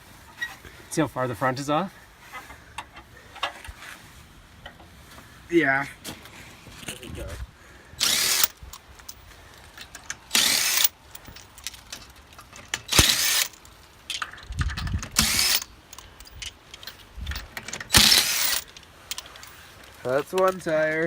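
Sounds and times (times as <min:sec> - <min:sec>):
power tool spinning lug nuts: 0:08.0 - 0:09.2, 0:09.9 - 0:11.8, 0:12.5 - 0:20.7.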